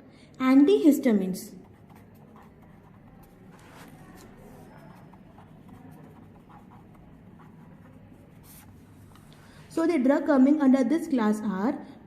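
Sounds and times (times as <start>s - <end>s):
pen scratching while writing: 1.6s - 9.3s.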